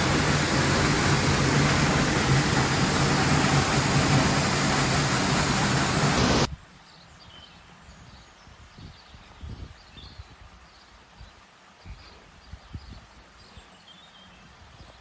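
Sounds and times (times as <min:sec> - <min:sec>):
waterfall rushing: 0:00.0 - 0:06.5.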